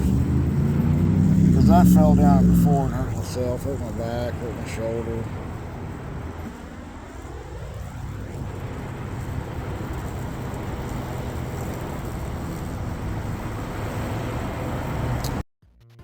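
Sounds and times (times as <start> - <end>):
electric lawnmower cutting grass: 6.4 - 15.4
music: 15.6 - 16.0.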